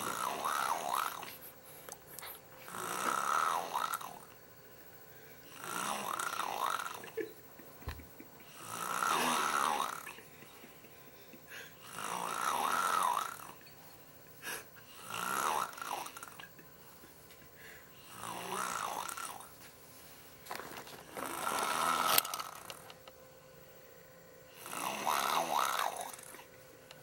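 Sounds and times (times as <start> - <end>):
girl imitating snoring with lips: 0.0 - 1.3, 2.7 - 4.2, 5.6 - 7.0, 8.6 - 10.2, 11.8 - 13.5, 14.5 - 16.4, 18.0 - 19.5, 24.6 - 26.3.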